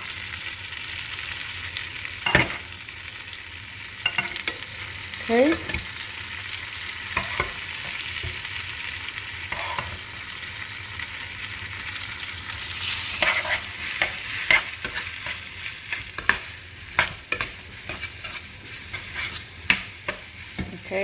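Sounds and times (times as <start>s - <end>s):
food sizzling in frying pan: 0.0s - 21.0s
utensil scraping pan: 7.1s - 8.5s, 9.5s - 10.1s, 12.8s - 20.9s.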